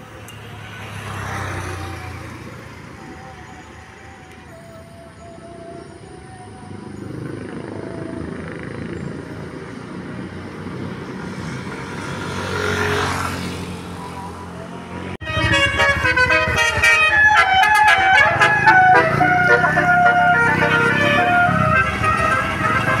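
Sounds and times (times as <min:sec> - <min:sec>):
bus engine running: 0:00.0 - 0:12.6, 0:13.6 - 0:23.0
bus horn playing a tune: 0:15.2 - 0:23.0.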